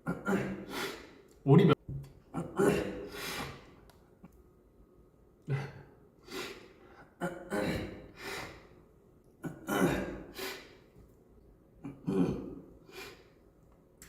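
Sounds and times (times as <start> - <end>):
man coughing: 0.0 - 0.7, 2.3 - 3.1, 7.2 - 8.1, 9.4 - 10.3.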